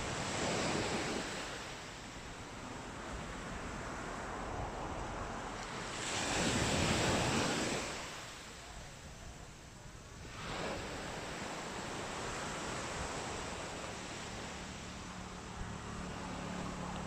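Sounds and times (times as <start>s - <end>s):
sea waves washing onto beach: 0.0s - 17.0s.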